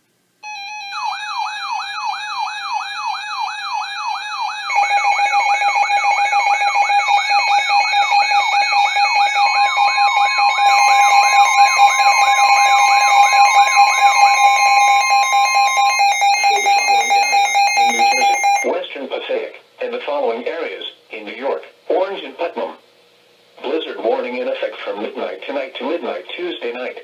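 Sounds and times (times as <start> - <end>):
high warbling alarm tones: 0.4 - 18.7
steady alarm tone: 0.4 - 18.7
siren tone sweeping up and down: 0.5 - 18.7.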